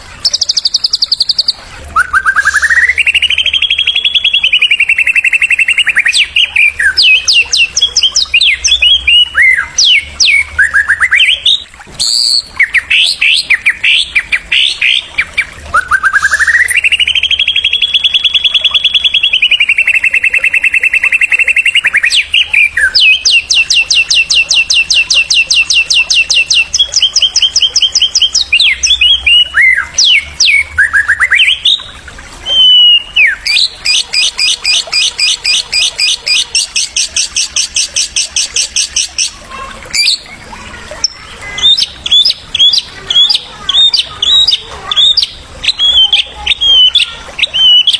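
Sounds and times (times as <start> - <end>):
bird song with fast trills: 0.0 - 47.9
short whistled bird phrases: 0.2 - 14.3, 15.3 - 26.6, 28.4 - 31.8, 32.4 - 33.7.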